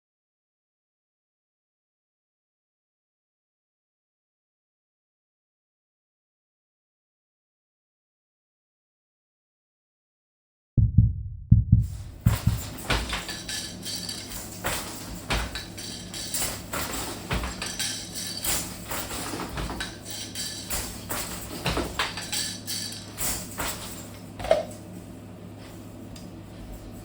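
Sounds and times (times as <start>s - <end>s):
loom wooden clicks and knocks: 12.2s - 24.8s.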